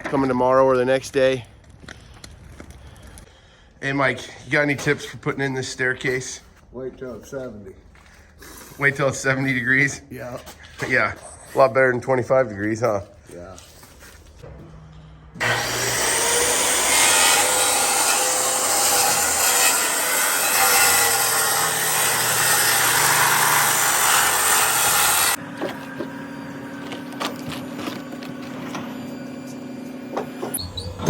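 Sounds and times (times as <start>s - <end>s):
power saw cutting wood: 15.4s - 31.0s.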